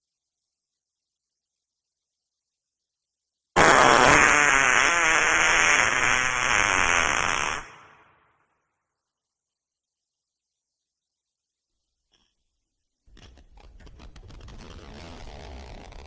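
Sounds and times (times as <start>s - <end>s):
long wet fart: 3.6s - 7.8s.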